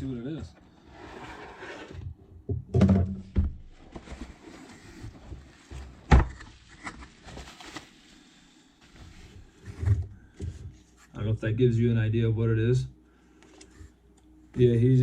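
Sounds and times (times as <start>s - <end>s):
cardboard box rustling and scraping: 0.8s - 2.0s.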